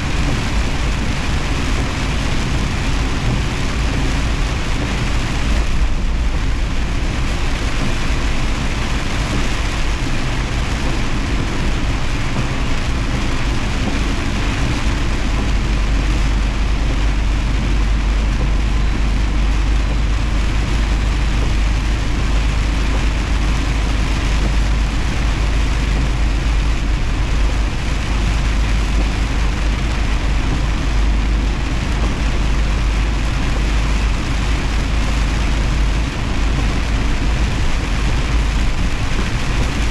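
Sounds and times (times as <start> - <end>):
rain hissing: 0.0 - 39.9
truck engine and road rumble: 0.0 - 39.9.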